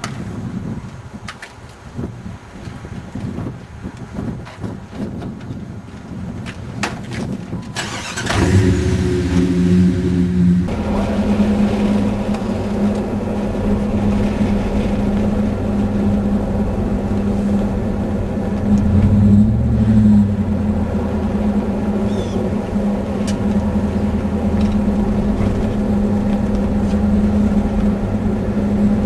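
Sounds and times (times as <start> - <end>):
car engine running: 7.9 - 29.0.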